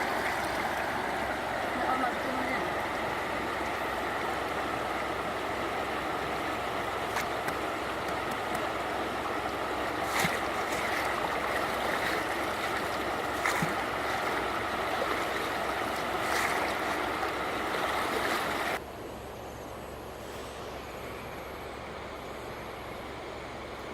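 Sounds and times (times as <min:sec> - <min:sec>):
rushing water: 0:00.0 - 0:18.8.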